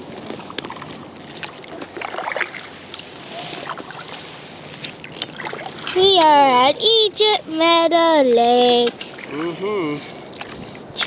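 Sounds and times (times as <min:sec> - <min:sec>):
kayak paddle pulling through water: 0:00.0 - 0:11.0
water splashes and drips: 0:00.2 - 0:06.2, 0:08.7 - 0:11.0.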